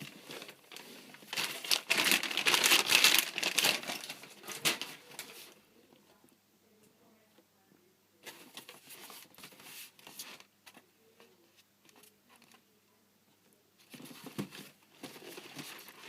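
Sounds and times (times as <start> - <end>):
paper packaging crinkling: 0.0 - 5.6, 15.0 - 16.0
faint handling noise: 0.0 - 7.5.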